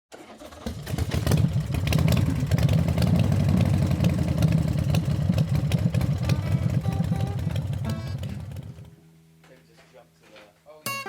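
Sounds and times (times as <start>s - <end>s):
motorcycle engine idling: 0.8s - 8.9s.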